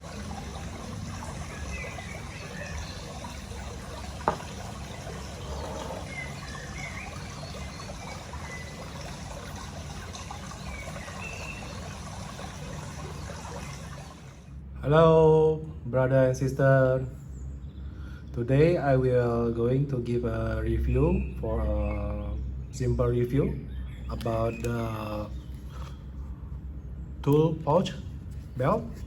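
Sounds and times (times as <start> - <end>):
trickle of water: 0.0 - 14.6.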